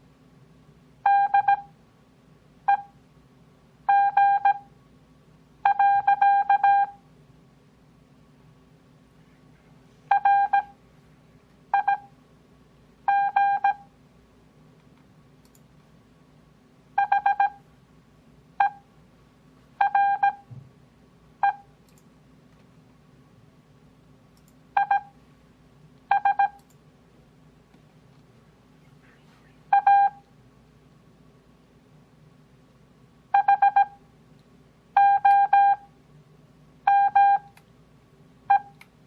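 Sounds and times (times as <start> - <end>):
morse code beeps: 1.1 - 1.7, 3.9 - 4.7, 5.7 - 7.0, 10.1 - 10.8, 11.8 - 12.1, 13.1 - 13.9, 17.0 - 17.6, 19.8 - 20.4, 24.8 - 25.1, 26.1 - 26.6, 29.7 - 30.2, 33.4 - 34.0, 35.0 - 35.9, 36.9 - 37.5, 38.5 - 38.8.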